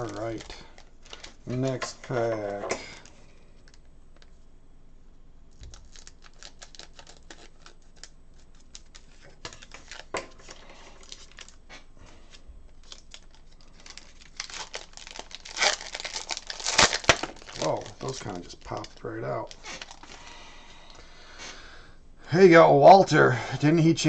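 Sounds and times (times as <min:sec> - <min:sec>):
foil wrapper crinkling and tearing: 0:00.0 - 0:04.3, 0:05.5 - 0:21.0.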